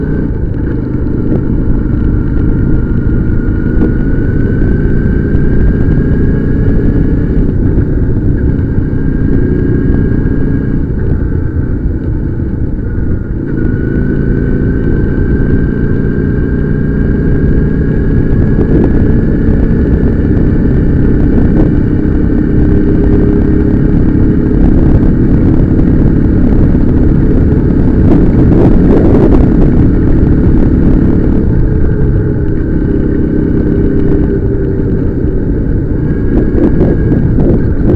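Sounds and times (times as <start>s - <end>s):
motorcycle engine whine: 0.0s - 37.9s.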